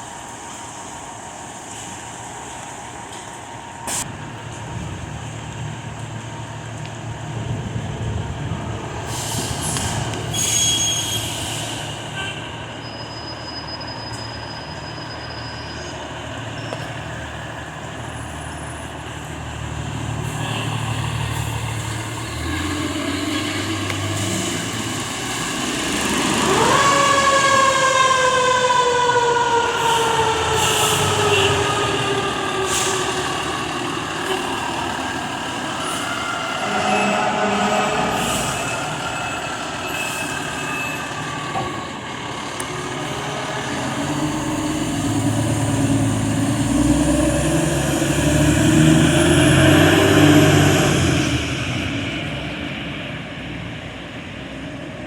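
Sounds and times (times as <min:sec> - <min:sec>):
diesel fire truck engines: 0:00.0 - 0:55.0.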